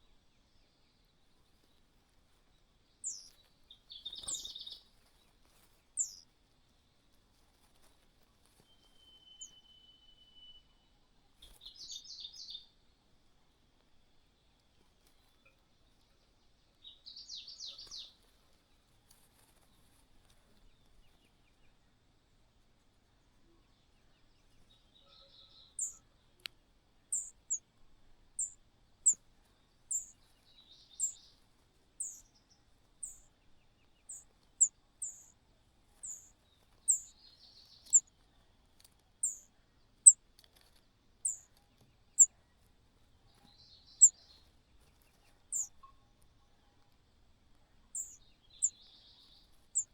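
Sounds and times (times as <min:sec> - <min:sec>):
high-pitched bird calls: 0:06.0 - 0:06.2, 0:25.8 - 0:26.0, 0:27.1 - 0:27.6, 0:28.4 - 0:29.2, 0:29.9 - 0:30.2, 0:32.0 - 0:32.2, 0:33.0 - 0:33.3, 0:34.1 - 0:35.3, 0:36.0 - 0:36.3, 0:36.9 - 0:37.2, 0:37.8 - 0:38.1, 0:39.2 - 0:40.2, 0:41.2 - 0:41.5, 0:44.0 - 0:44.2, 0:45.5 - 0:45.8, 0:47.9 - 0:49.9
soft scratchy bursts: 0:27.1 - 0:49.9.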